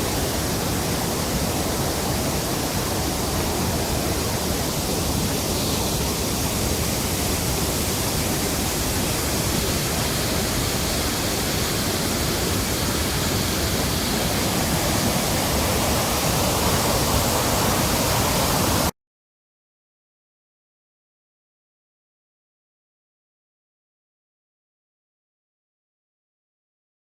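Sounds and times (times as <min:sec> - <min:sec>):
waterfall rushing: 0:00.0 - 0:18.9.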